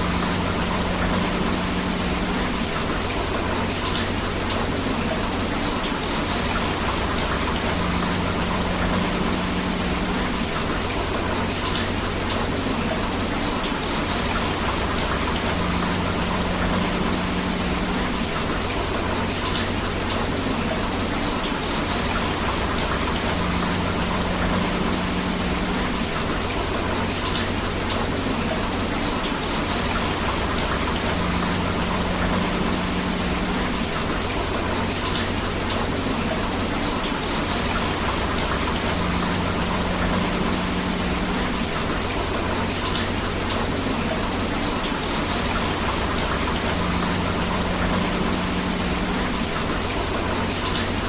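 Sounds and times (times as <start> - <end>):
rushing river water: 0.0 - 51.0
steady rain: 0.0 - 51.0.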